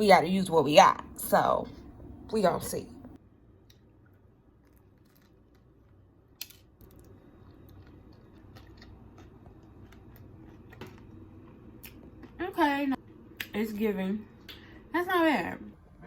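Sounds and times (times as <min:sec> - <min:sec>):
faint biting and chewing: 0:03.6 - 0:12.4.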